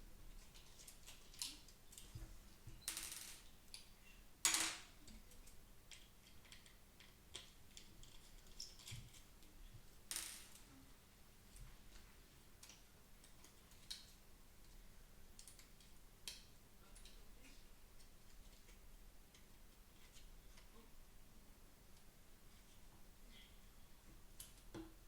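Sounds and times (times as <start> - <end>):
light clicks and taps of plastic parts: 5.0 - 9.6, 15.4 - 20.8.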